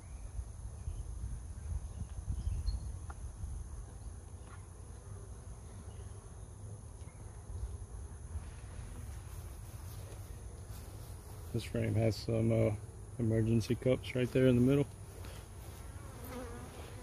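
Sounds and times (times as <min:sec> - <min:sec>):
low rumble of wind on microphone: 0:00.0 - 0:04.4
honeybees buzzing: 0:03.7 - 0:17.0.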